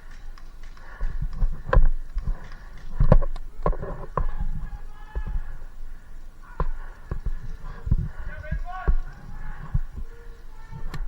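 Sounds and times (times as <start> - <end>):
faint distant voices: 0.0 - 11.0
knocks and low thumps: 6.6 - 11.0.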